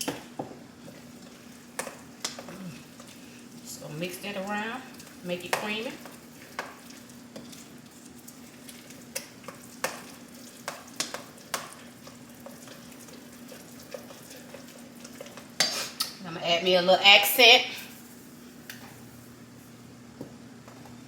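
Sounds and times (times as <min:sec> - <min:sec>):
wet squishing of stirred potatoes: 0:00.4 - 0:16.2.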